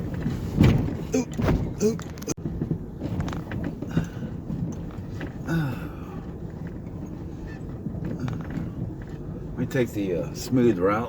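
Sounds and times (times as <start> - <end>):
knocks and rattles: 0.0 - 5.4
truck engine and road rumble: 0.0 - 11.0.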